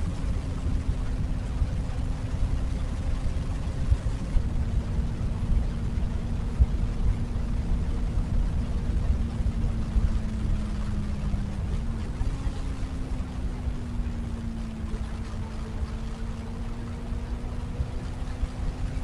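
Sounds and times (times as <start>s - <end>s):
motorcycle engine cruising: 0.0s - 19.0s
wind buffeting microphone: 0.0s - 19.0s.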